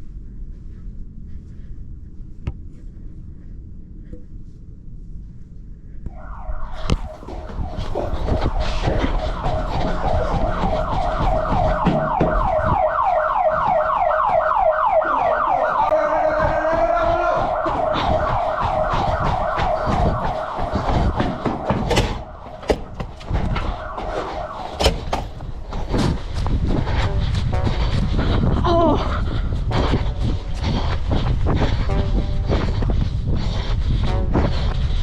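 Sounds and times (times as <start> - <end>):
alarm rising whoop: 6.1 - 25.8
sharp knocks: 17.8 - 25.5.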